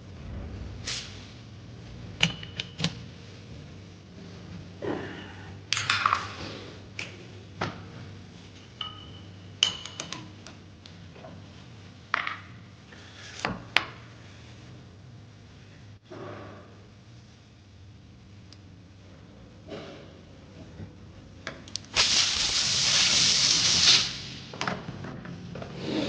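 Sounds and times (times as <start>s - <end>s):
metal ringing ping: 8.8s - 9.4s.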